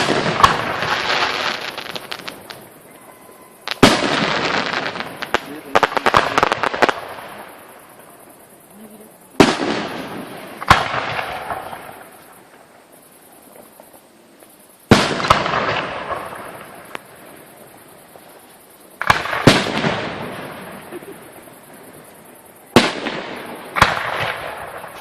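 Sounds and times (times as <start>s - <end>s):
fireworks bangs with echo: 0.0s - 2.8s, 3.6s - 8.2s, 9.3s - 12.6s, 14.9s - 17.2s, 19.0s - 22.0s, 22.7s - 25.0s.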